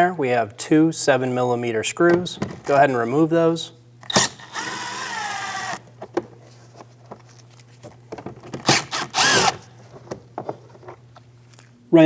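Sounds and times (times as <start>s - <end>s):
power driver whine: 4.0s - 5.9s, 8.6s - 9.7s.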